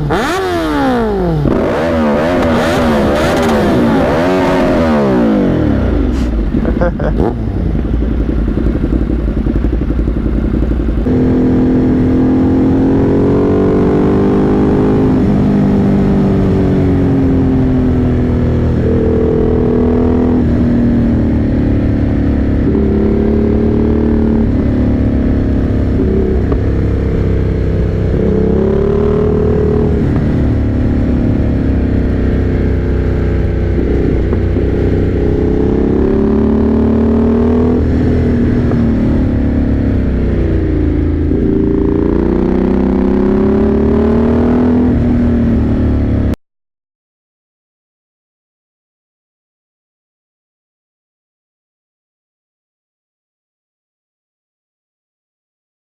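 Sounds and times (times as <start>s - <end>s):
motorcycle engine accelerating: 0.0s - 46.4s
road and wind noise: 0.0s - 46.4s.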